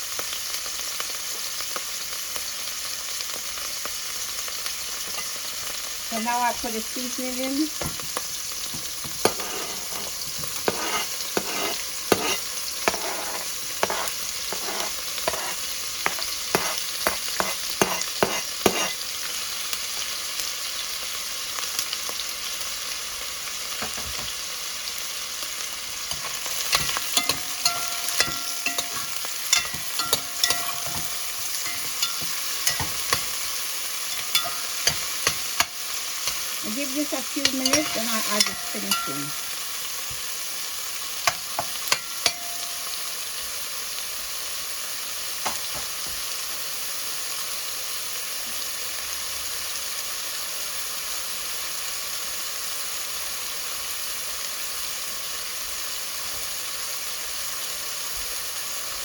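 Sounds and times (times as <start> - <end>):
shrimp sizzling in oil: 0.0 - 59.0
utensil knocking against pan: 7.8 - 19.0, 26.1 - 33.4, 34.1 - 40.2, 41.3 - 43.0.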